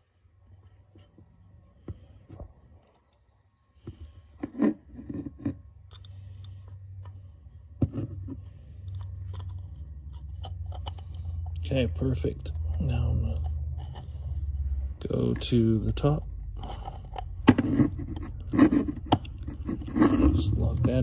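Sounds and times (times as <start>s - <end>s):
low steady hum: 0.0s - 21.0s
microphone parts being handled: 3.8s - 21.0s.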